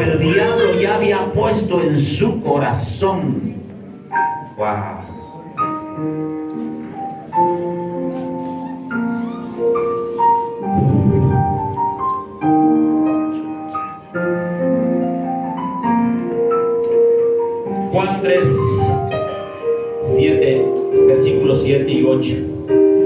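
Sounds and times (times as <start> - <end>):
keyboard playing piano chords: 0.0 - 23.0.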